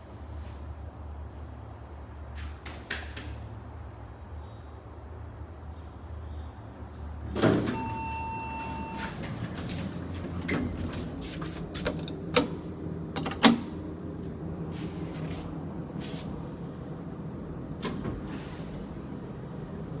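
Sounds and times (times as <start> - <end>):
elevator doors sliding: 7.3 - 14.0.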